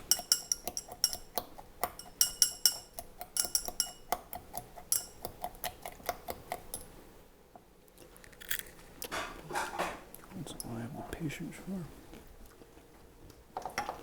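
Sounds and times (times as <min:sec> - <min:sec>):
utensil clinking against container: 0:00.0 - 0:06.9.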